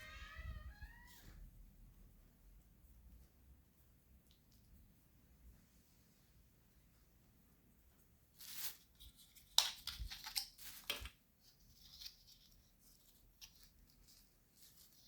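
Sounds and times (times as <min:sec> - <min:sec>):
light clicks and handling noises: 0:08.0 - 0:15.0.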